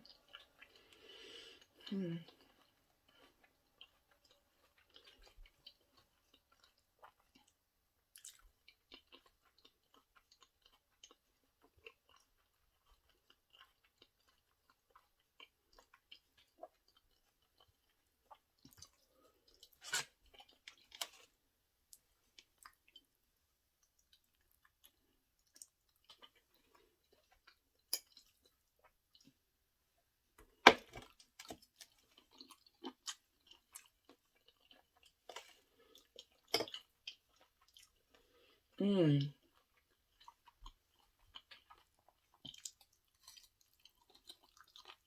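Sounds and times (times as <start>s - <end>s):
person chewing with mouth smacks: 39.3s - 45.0s.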